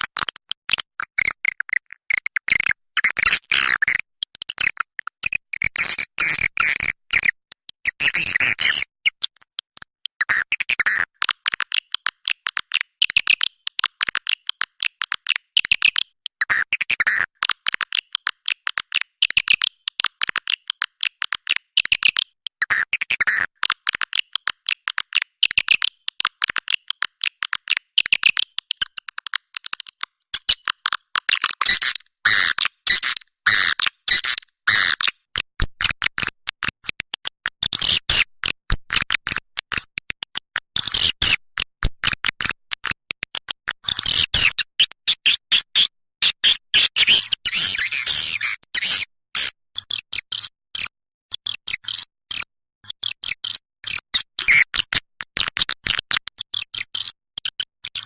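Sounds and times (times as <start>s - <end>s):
swiftlet chirps and twitters: 44.4s - 49.1s.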